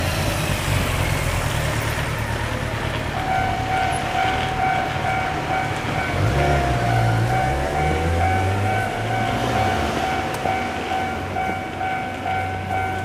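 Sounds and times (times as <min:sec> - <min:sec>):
electronic crossing bell ringing: 0:01.8 - 0:13.0.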